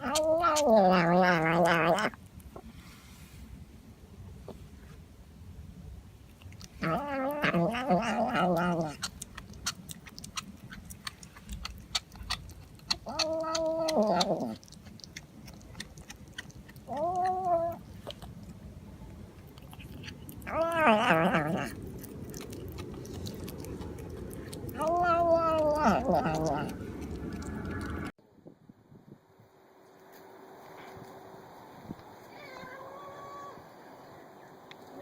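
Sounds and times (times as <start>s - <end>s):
cat yowling meows: 0.0s - 2.1s, 6.8s - 9.0s, 13.0s - 14.6s, 20.4s - 21.8s, 24.7s - 27.8s, 32.2s - 33.8s.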